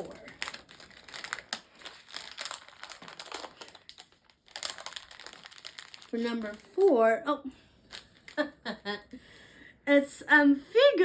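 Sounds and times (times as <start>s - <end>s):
packaging crinkling: 0.0s - 6.9s, 7.9s - 8.6s.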